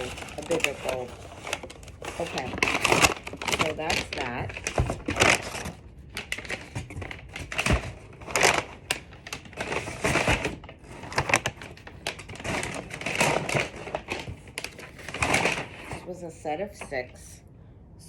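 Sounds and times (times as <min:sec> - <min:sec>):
packaging crinkling and rustling: 0:00.0 - 0:17.2.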